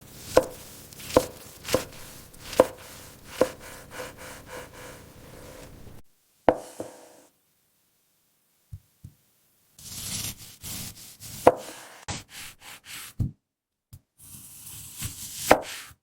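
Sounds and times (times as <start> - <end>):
knife chopping fruit: 0.0 - 7.0, 9.8 - 12.2.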